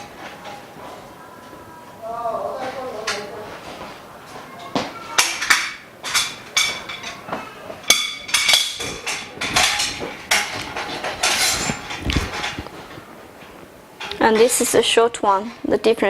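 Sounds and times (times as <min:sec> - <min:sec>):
metal bars clanking and knocking: 0:05.2 - 0:14.8.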